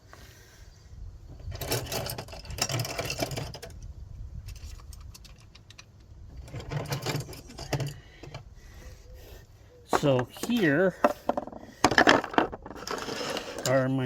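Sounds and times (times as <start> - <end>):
tools rattling and clicking: 1.4 - 8.5, 9.9 - 14.0.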